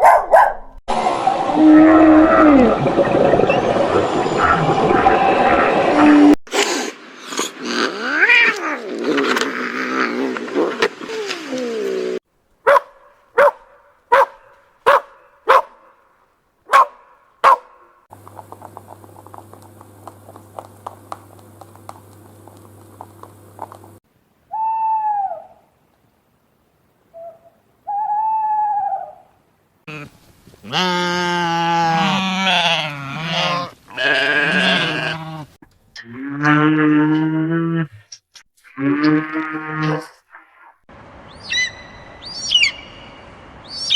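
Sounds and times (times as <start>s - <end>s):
mixed animal noise: 16.7s - 24.0s, 29.9s - 37.2s.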